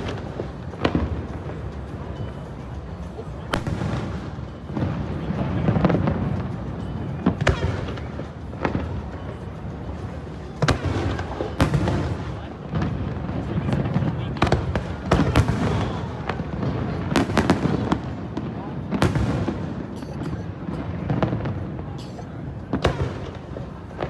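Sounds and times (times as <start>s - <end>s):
fireworks bangs echoing: 3.5s - 24.0s.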